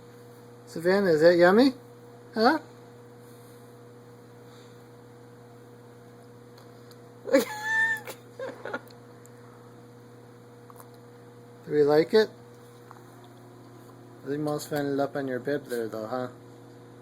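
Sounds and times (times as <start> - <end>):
low electrical hum: 0.0 - 17.0
high-pitched vocal cry: 7.3 - 8.2.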